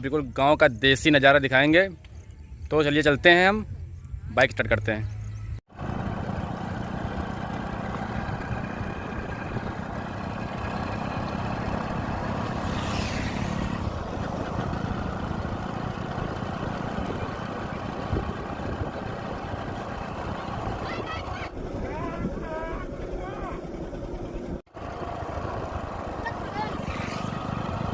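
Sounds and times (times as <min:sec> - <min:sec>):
motorcycle running: 0:05.7 - 0:21.8, 0:22.4 - 0:27.9
wind buffeting microphone: 0:06.8 - 0:23.1.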